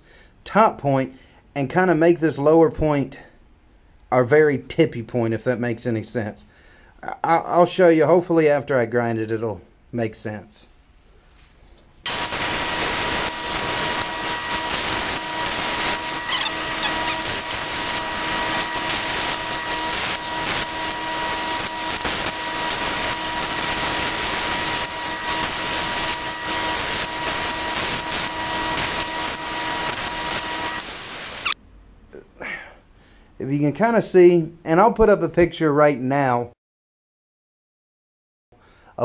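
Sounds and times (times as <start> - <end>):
power grinder grinding steel: 12.1 - 31.6.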